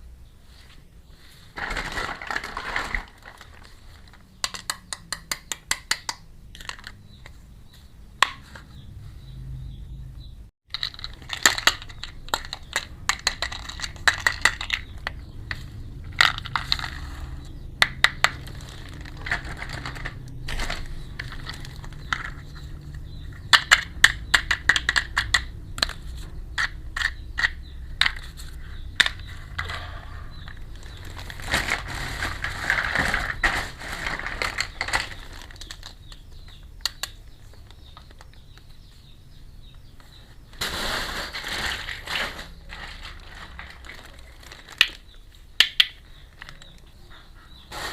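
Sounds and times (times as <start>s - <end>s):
packaging crinkling: 1.6s - 4.3s, 18.3s - 22.4s, 30.5s - 36.1s, 40.6s - 45.2s
plastic pieces clicking: 10.7s - 17.0s, 23.4s - 29.8s, 34.2s - 38.7s, 41.4s - 46.9s.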